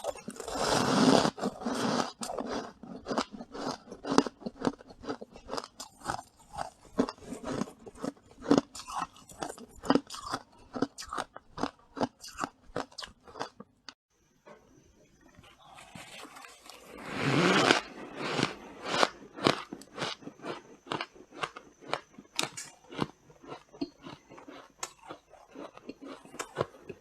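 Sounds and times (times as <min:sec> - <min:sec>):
chewing frost crunches: 0:17.7 - 0:27.0.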